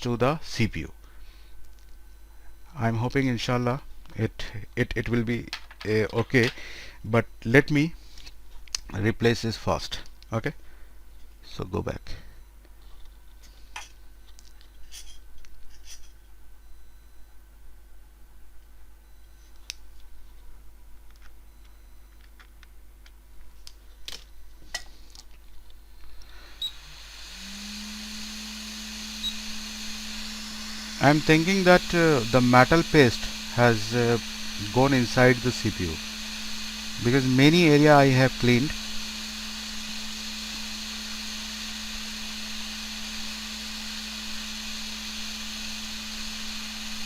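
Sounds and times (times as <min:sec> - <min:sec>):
equipment low hum: 0:16.3 - 0:47.0
hot-air blower hissing: 0:26.1 - 0:47.0.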